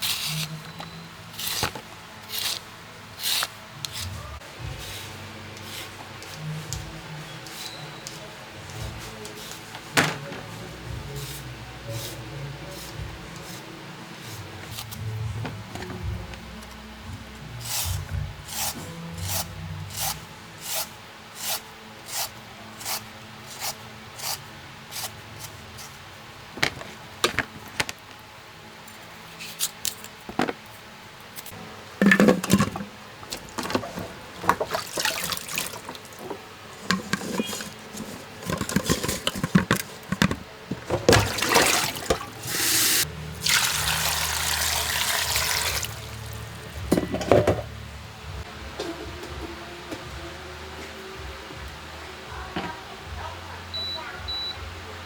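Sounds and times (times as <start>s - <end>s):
clattering of handled objects: 32.0s - 42.3s
water running: 32.0s - 46.9s.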